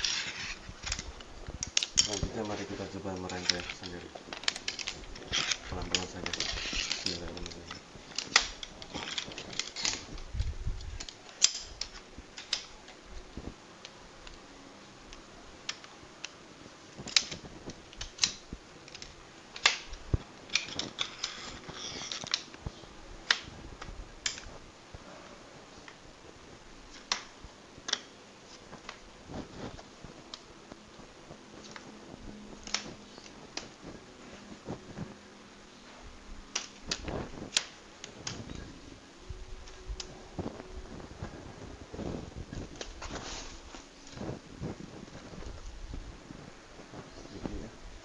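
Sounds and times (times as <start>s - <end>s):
metal chair tubes clicking: 0.0s - 13.0s, 17.0s - 23.5s, 24.2s - 24.6s, 36.5s - 38.7s
rustling: 0.0s - 48.0s.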